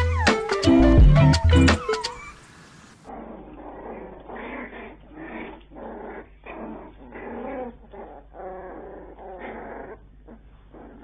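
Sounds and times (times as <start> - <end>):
dogs grunting and whimpering: 3.1 - 11.0.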